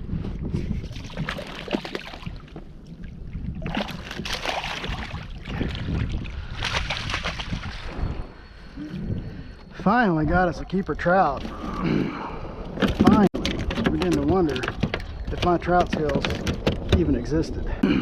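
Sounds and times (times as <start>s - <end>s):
water sloshing: 0.8s - 7.9s.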